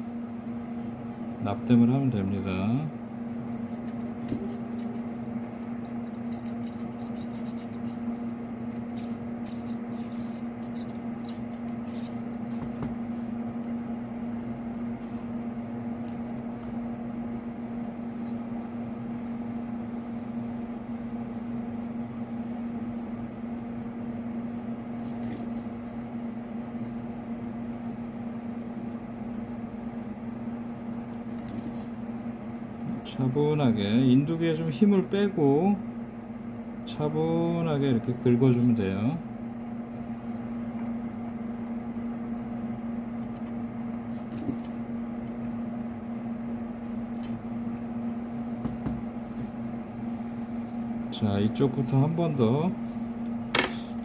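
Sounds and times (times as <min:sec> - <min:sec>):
steady low hum: 0:00.0 - 0:54.0
soldering iron scraping pins: 0:00.8 - 0:12.7.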